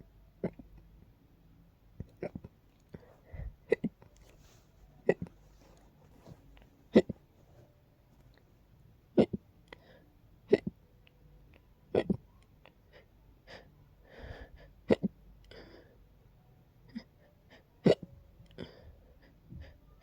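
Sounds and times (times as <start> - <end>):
person hiccupping: 0.4 - 0.7, 2.0 - 2.5, 3.3 - 4.1, 5.0 - 5.3, 6.9 - 7.2, 9.2 - 9.4, 10.5 - 10.8, 11.9 - 12.2
soft breathing: 2.8 - 8.4, 9.7 - 10.2, 12.7 - 14.8, 18.5 - 20.0.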